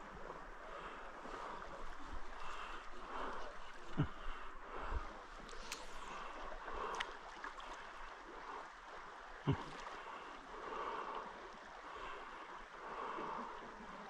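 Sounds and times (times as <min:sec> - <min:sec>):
creek water rushing: 0:00.0 - 0:14.0.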